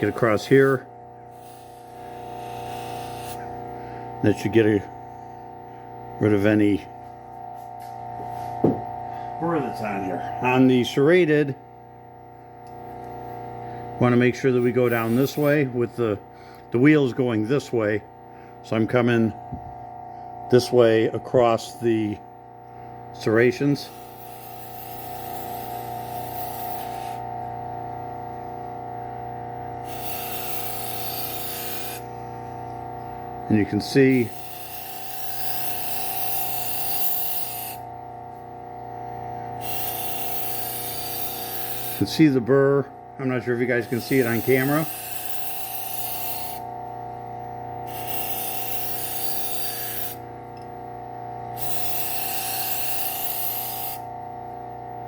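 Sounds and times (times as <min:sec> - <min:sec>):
knife blade rubbing on wheel: 0:00.0 - 0:04.7, 0:14.0 - 0:15.9, 0:23.2 - 0:27.4, 0:29.8 - 0:32.2, 0:32.9 - 0:37.9, 0:39.4 - 0:46.9, 0:47.8 - 0:50.8, 0:51.4 - 0:54.2
sander motor humming: 0:00.0 - 0:55.0.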